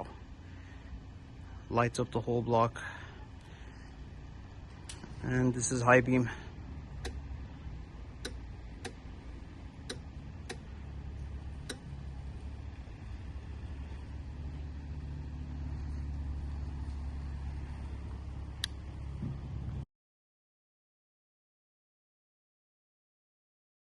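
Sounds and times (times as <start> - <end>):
motorcycle engine idling: 6.1 - 19.8
sharp clicks: 8.2 - 9.0, 9.8 - 11.9.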